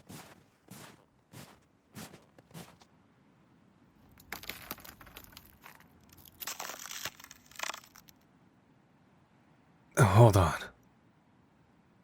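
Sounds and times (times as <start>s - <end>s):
footsteps crunching on frozen ground: 0.0s - 2.9s.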